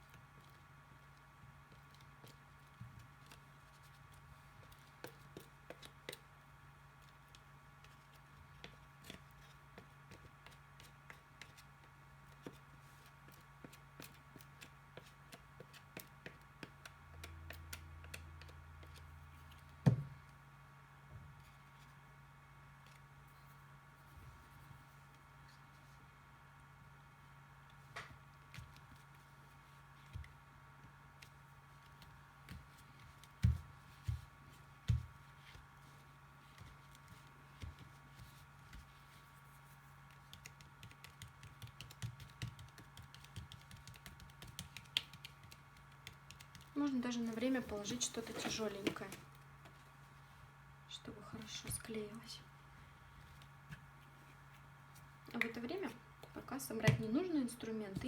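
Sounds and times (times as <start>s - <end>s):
low steady hum: 0.0s - 58.0s
hands patting paper on table: 31.2s - 49.8s.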